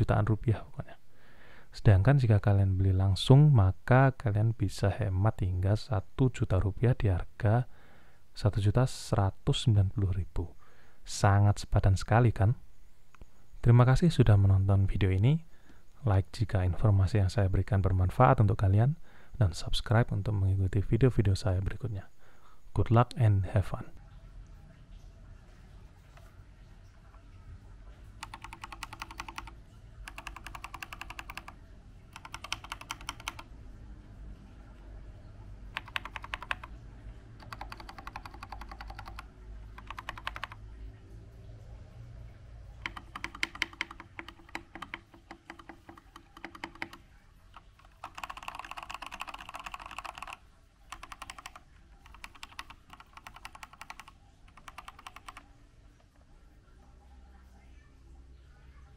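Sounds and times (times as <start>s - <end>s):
mechanical keyboard typing: 28.2s - 33.5s, 35.7s - 36.8s, 37.4s - 40.6s, 42.8s - 55.5s.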